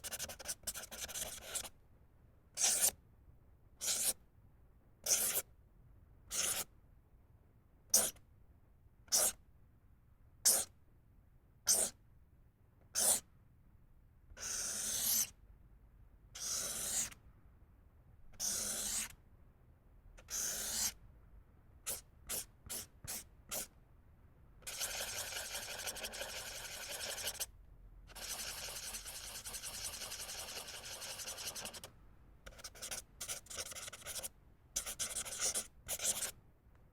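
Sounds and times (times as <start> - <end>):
marker stroking across paper: 0.0 - 1.7, 2.6 - 3.0, 3.8 - 4.2, 16.4 - 17.2, 18.4 - 19.2, 20.2 - 21.0, 21.9 - 23.7, 24.6 - 27.5, 28.1 - 36.4.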